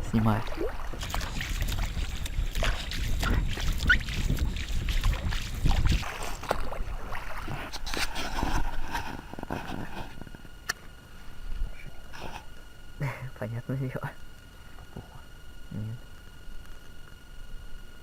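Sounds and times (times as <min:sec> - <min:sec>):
water noise: 0:00.0 - 0:11.5.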